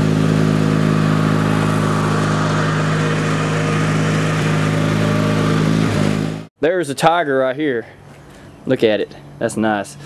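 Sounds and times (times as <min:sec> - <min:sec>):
lawn mower engine running: 0:00.0 - 0:06.5.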